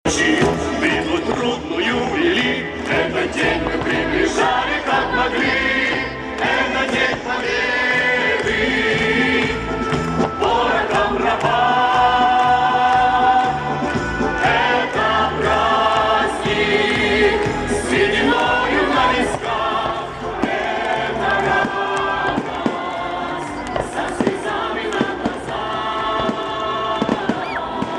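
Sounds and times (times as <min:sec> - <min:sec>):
choir singing: 0:00.1 - 0:27.9
instrumental accompaniment: 0:00.1 - 0:27.9.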